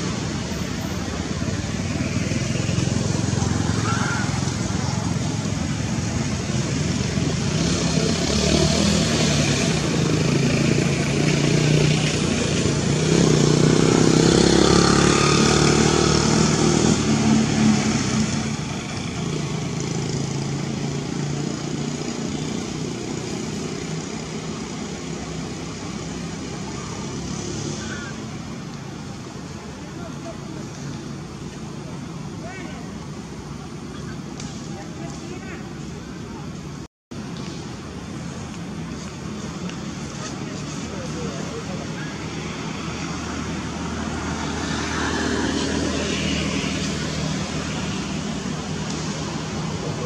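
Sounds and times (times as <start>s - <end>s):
vehicle engine passing: 0.0s - 28.7s.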